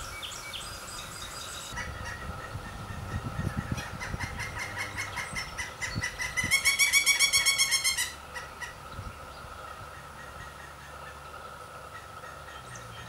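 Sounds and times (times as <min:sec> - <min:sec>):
woodpeckers calling rapidly: 0:00.0 - 0:13.0.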